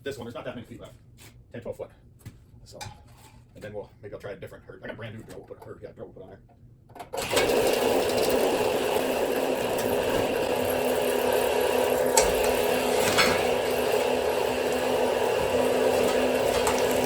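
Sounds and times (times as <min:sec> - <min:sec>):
drill running under load: 0:07.2 - 0:17.0.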